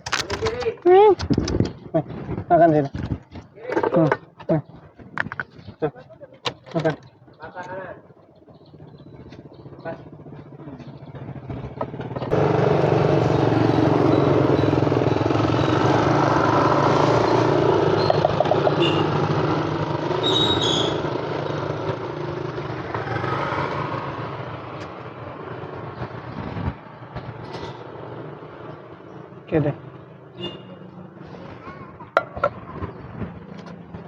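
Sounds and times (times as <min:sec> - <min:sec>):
vehicle engine running loud: 0:08.0 - 0:34.0.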